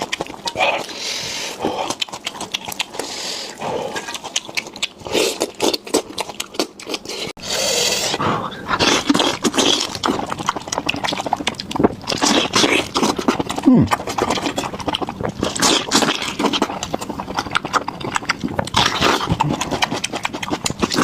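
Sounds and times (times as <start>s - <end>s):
chewing and crunching cartilage: 0.0s - 7.4s, 8.6s - 21.0s.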